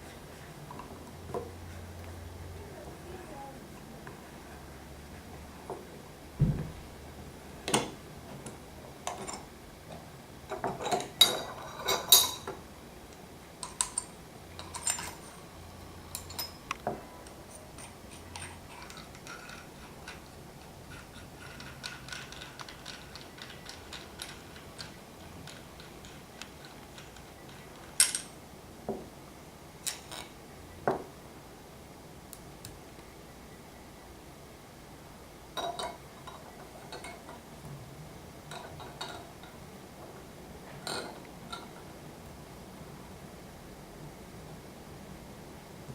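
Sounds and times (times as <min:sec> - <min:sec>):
metal parts clicking and clinking: 0:13.6 - 0:15.5, 0:16.1 - 0:28.4, 0:35.6 - 0:37.4, 0:38.5 - 0:39.6, 0:40.8 - 0:41.8.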